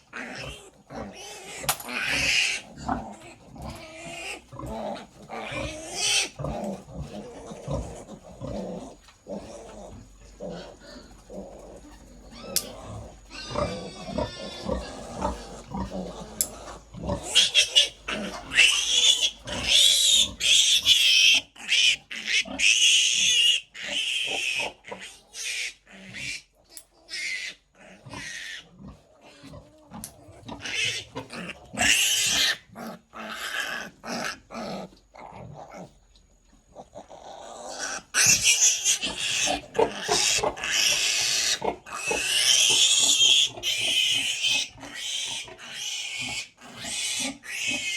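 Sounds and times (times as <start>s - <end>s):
piglet squealing: 12.3s - 14.8s, 37.7s - 47.9s.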